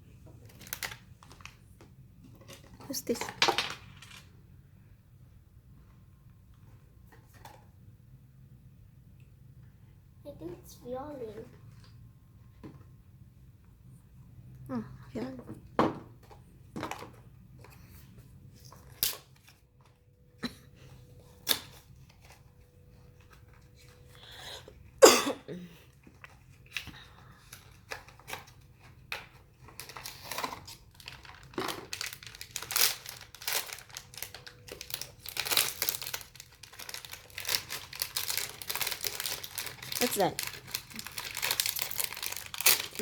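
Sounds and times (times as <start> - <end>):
wrapping crinkling and tearing: 0.4 - 1.8, 18.6 - 19.6, 26.1 - 43.0.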